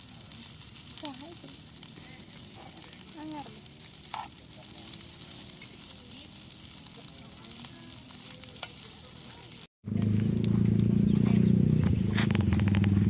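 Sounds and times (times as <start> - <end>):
rice sizzling in a pan: 0.0 - 10.0
faint voices: 0.0 - 12.2.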